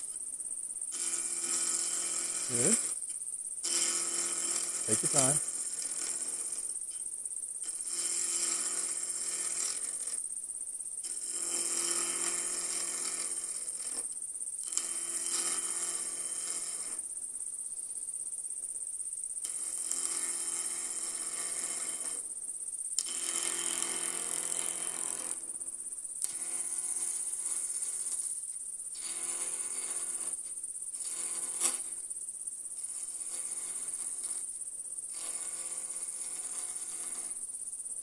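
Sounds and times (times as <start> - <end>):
turning tool scraping wood: 0.9 - 7.0, 7.6 - 10.2, 11.0 - 17.0, 19.4 - 22.2, 23.0 - 25.4, 26.2 - 28.4, 29.0 - 32.0, 32.8 - 34.5, 35.1 - 37.4
wood lathe whine: 0.9 - 7.0, 7.6 - 10.2, 11.0 - 17.0, 19.4 - 22.3, 23.0 - 25.5, 26.2 - 28.4, 29.0 - 32.0, 32.8 - 34.5, 35.1 - 37.4.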